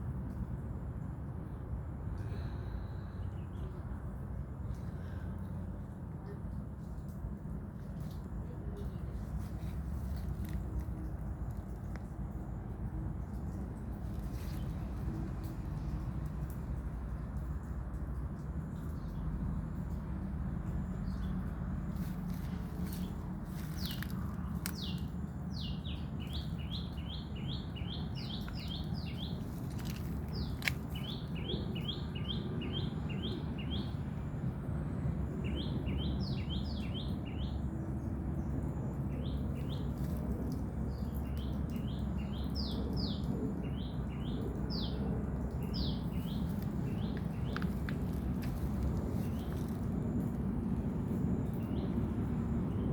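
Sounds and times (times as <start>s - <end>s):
bird chirping: 22.0s - 34.0s.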